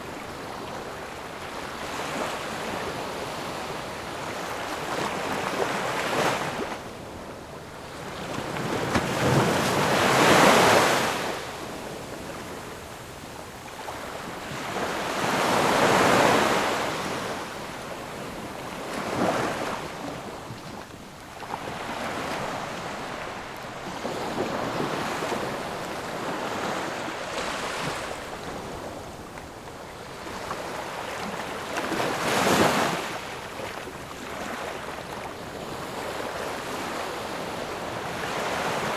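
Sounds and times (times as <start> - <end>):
ocean waves breaking: 7.8 - 11.7, 13.9 - 20.8.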